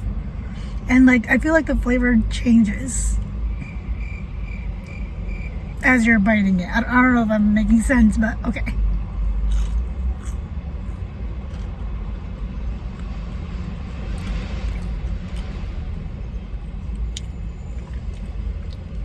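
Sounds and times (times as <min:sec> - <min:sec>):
steady low rumble: 0:00.0 - 0:19.0
faint chewing clicks: 0:08.9 - 0:15.8, 0:16.9 - 0:19.0.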